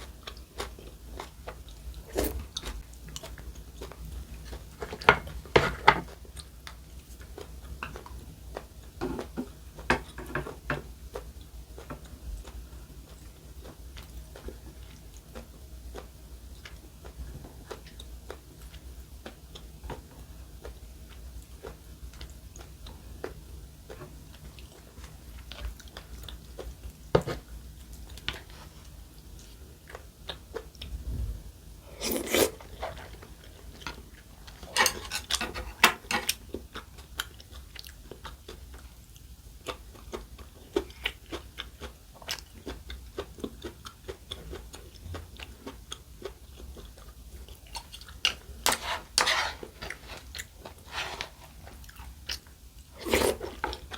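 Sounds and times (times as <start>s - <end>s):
chewing and biting food: 32.0s - 53.9s.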